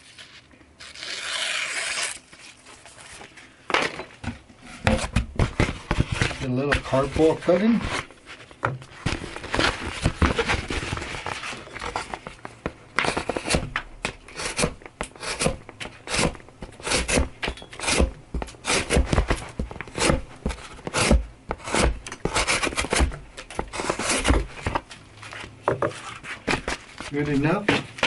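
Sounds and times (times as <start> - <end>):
knife slicing cardboard: 13.0 - 24.8.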